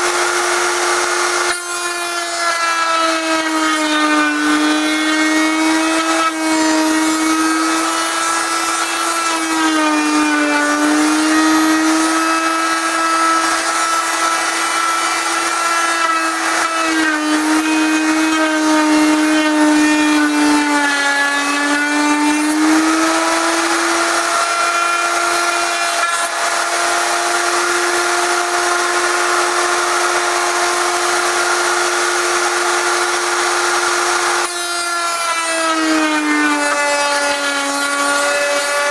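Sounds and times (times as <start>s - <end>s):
wood router whining: 0.0s - 38.9s.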